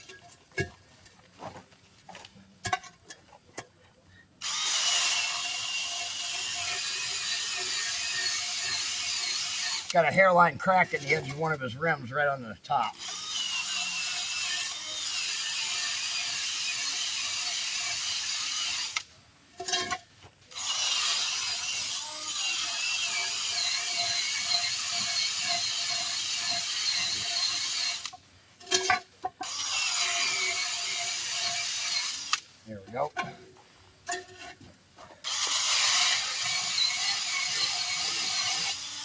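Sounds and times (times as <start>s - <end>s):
power tool scrubbing wheel rim: 4.4s - 11.2s, 12.9s - 19.0s, 20.6s - 28.1s, 29.4s - 32.4s, 35.3s - 39.0s.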